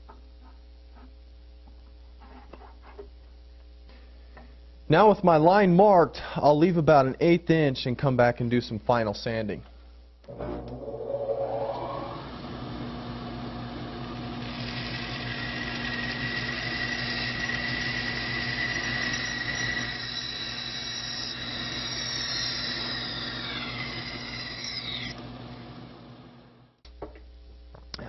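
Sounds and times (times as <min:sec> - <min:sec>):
electric saw cutting wood: 0:10.3 - 0:26.6.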